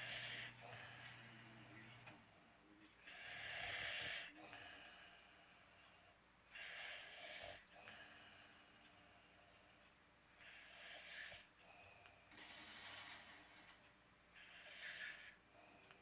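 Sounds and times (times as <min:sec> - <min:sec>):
faint snoring: 0:00.0 - 0:02.1, 0:03.0 - 0:05.4, 0:06.5 - 0:08.6, 0:10.4 - 0:13.8, 0:14.4 - 0:16.0.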